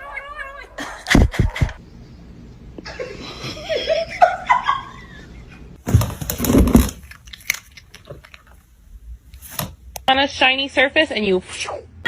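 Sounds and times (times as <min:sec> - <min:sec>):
person laughing: 0:00.8 - 0:01.8
loud rustle or thump: 0:05.8 - 0:07.0.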